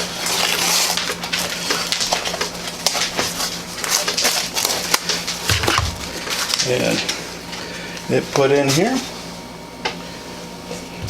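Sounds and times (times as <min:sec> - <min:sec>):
plastic packaging crinkling: 0:00.0 - 0:07.6.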